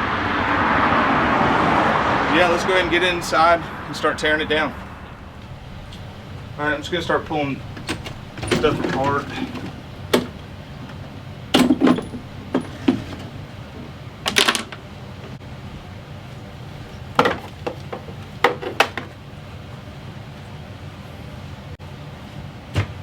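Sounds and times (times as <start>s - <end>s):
metal tools clinking and clanking: 5.4s - 14.9s.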